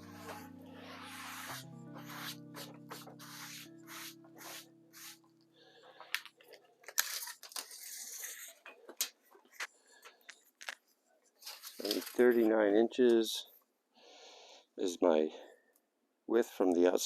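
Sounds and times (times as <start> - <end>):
background music with steady beat: 0.0 - 5.5
rustling handling noises: 0.0 - 12.8.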